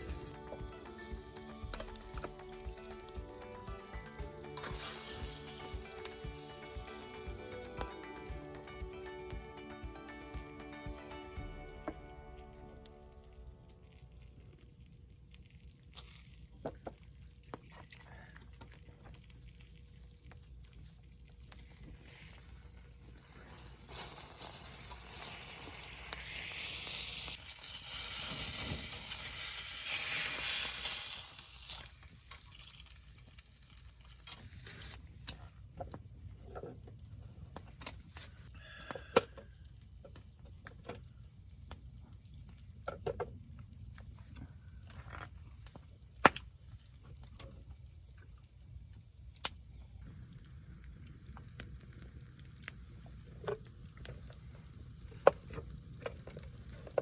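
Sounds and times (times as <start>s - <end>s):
food sizzling in a pan: 4.4s - 7.5s, 21.9s - 33.7s.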